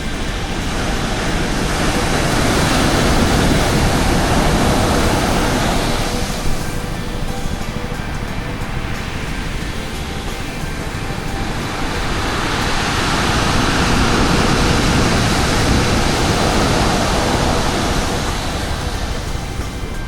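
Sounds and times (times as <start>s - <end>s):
sea wave rushing: 0.0s - 20.0s.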